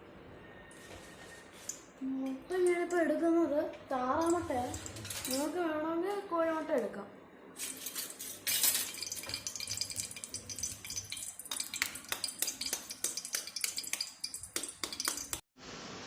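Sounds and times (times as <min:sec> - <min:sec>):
utensils and dishes clinking: 0:04.1 - 0:05.7, 0:07.6 - 0:15.4.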